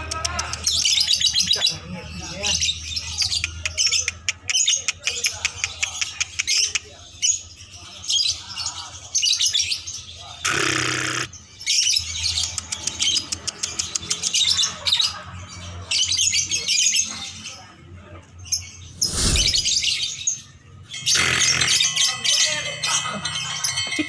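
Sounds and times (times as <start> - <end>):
lovebird chirping and trilling: 18.8 - 20.3
short rushing noise: 18.9 - 20.1.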